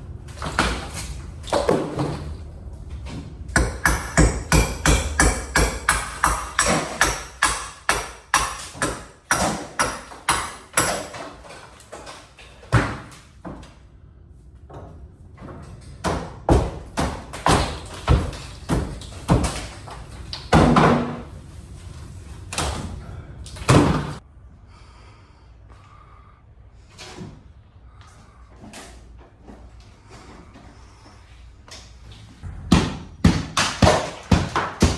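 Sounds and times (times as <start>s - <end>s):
hard knocks on wooden ceiling: 3.5s - 11.2s, 16.0s - 19.9s, 20.5s - 21.2s, 32.7s - 34.9s.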